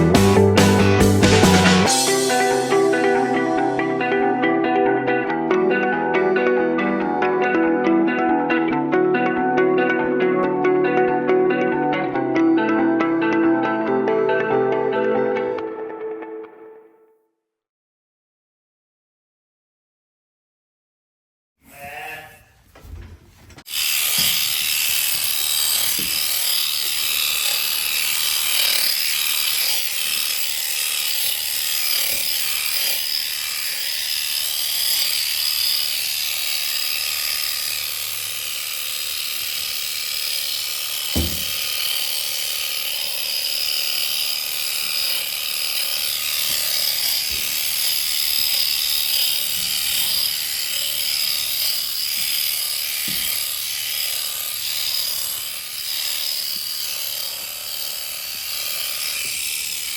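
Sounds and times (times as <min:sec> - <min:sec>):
electric shearing handpiece running: 0:00.0 - 0:15.7, 0:23.6 - 0:59.9
knock: 0:41.2 - 0:41.5.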